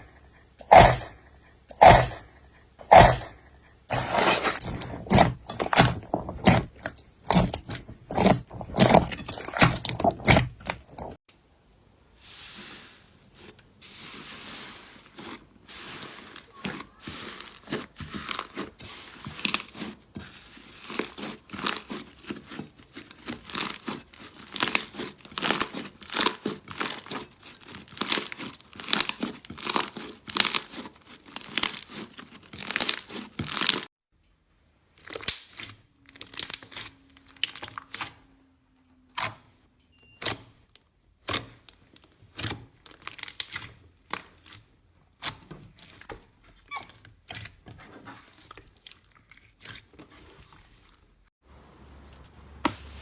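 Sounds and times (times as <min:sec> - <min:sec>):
slime crackling and popping: 0:42.9 - 0:43.6.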